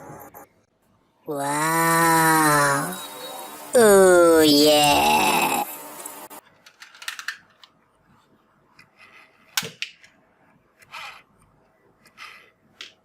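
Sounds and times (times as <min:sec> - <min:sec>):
toy guns rattling and scraping: 0:06.4 - 0:07.7.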